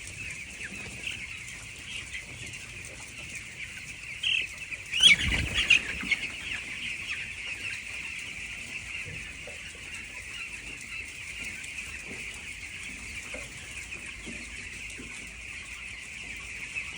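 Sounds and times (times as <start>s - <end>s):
chicks peeping: 0.0s - 16.9s.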